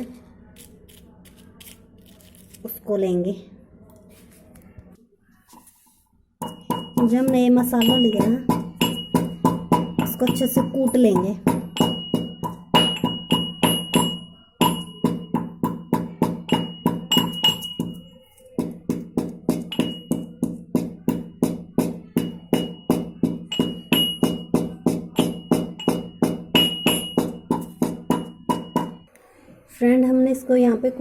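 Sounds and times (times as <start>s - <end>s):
mortar and pestle pounding spices: 6.4s - 29.1s.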